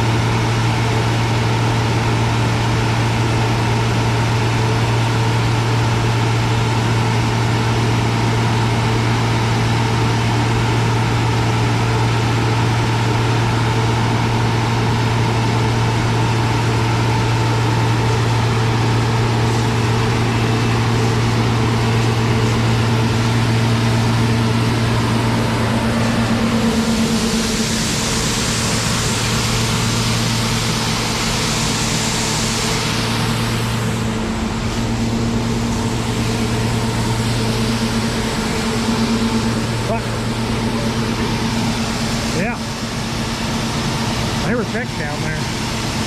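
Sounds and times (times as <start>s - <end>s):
diesel engine drone: 0.0s - 46.0s
high machinery hum: 0.0s - 46.0s
rushing hiss: 17.1s - 24.3s, 25.9s - 46.0s.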